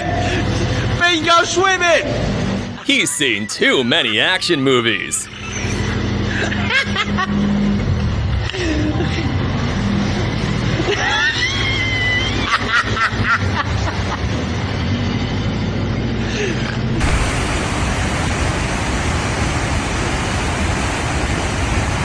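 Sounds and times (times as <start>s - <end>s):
loud rushing noise: 16.9s - 22.0s.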